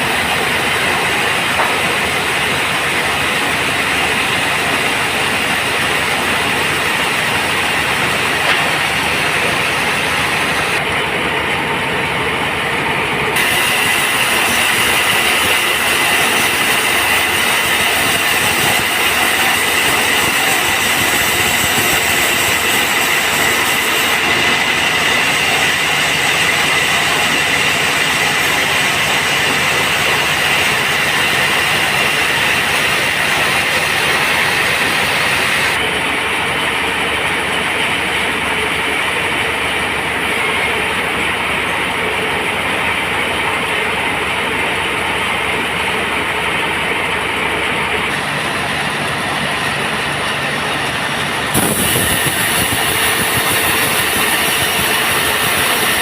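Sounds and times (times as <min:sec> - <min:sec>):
band saw sawing wood: 0:00.0 - 0:12.2, 0:13.3 - 0:35.9, 0:46.8 - 0:56.0.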